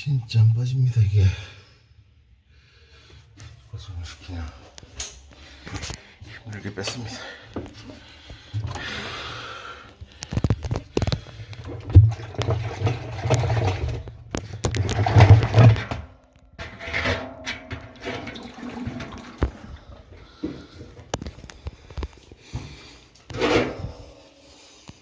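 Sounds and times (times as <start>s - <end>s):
knocks and clatters of parts: 10.2s - 19.6s.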